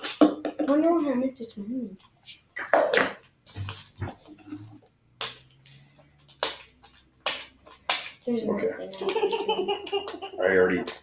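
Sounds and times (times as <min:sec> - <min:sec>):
plastic crackles and clicks: 0:02.9 - 0:08.3.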